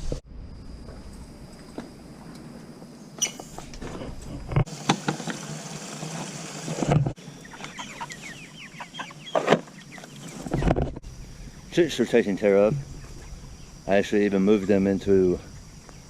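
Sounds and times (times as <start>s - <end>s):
chickens clucking and peeping: 7.2s - 10.7s.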